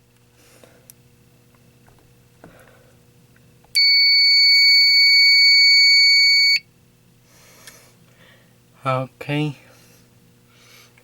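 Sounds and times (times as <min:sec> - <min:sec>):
fire alarm tone: 0:03.8 - 0:06.7.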